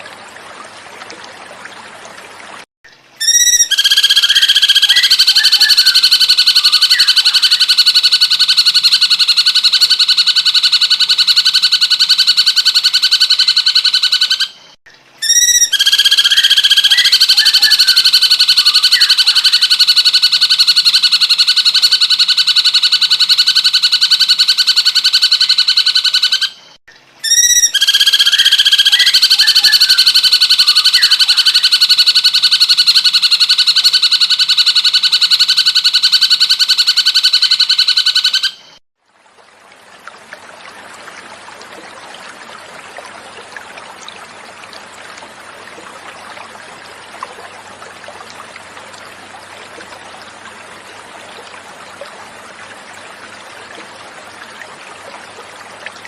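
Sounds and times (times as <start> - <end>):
recorded bird song buzzy trill: 2.9 - 38.8.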